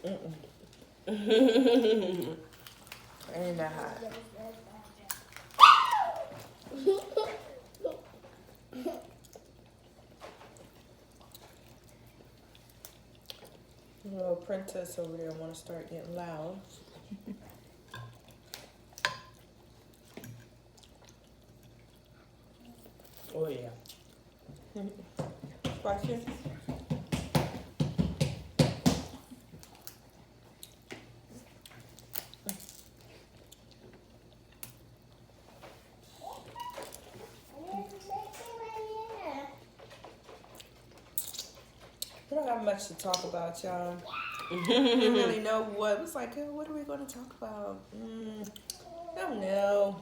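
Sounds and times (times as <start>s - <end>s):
chewing with squishes and clicks: 2.1s - 25.2s, 29.3s - 42.4s, 48.3s - 49.0s.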